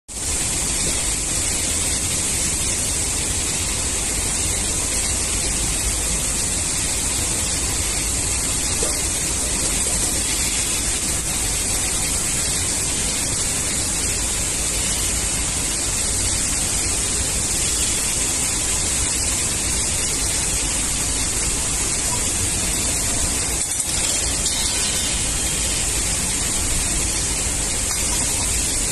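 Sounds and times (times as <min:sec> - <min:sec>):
saw blade spinning hiss: 0:07.3 - 0:28.9.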